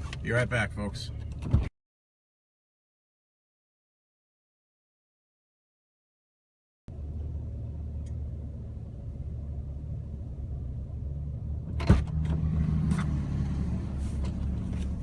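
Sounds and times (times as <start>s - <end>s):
car engine idling: 6.9s - 11.8s.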